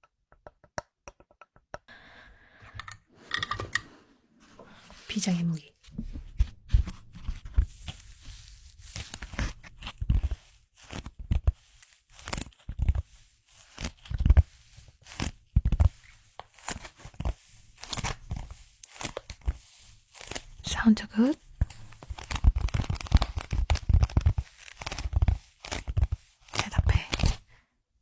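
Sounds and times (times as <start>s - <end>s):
crinkling and tearing: 6.8s - 27.5s.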